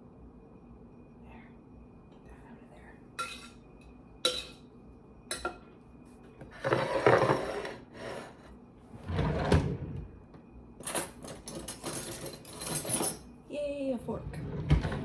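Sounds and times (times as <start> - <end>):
cutlery clinking: 3.2 - 3.6, 4.3 - 4.7, 10.8 - 13.3
cutlery drawer rattling: 10.8 - 13.2.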